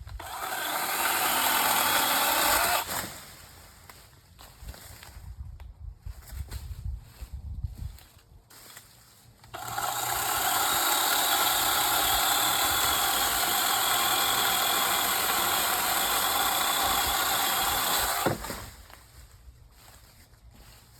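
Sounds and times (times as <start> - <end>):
cordless chainsaw high whine: 0.2 - 3.0, 9.5 - 18.5.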